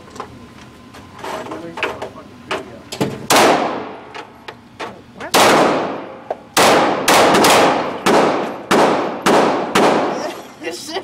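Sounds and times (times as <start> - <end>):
gunshots with ringing echo: 3.3 - 4.0, 5.3 - 10.2.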